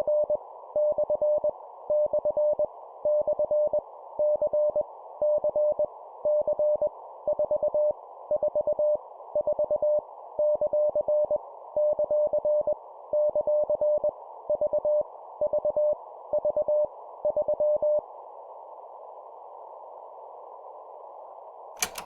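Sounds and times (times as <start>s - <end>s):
morse code beeps: 21.8s - 22.0s.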